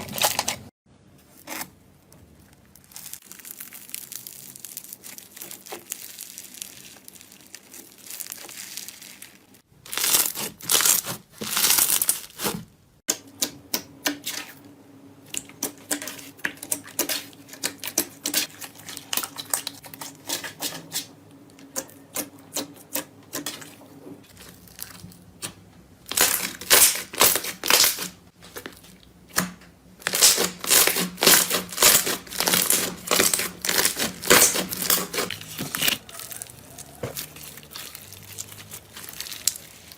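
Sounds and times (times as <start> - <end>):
crunchy material crackling: 2.3 - 12.6, 30.0 - 39.9.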